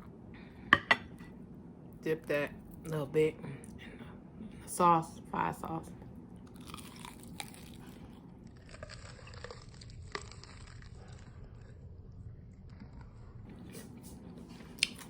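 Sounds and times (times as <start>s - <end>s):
person chewing crispy food: 6.4s - 14.0s.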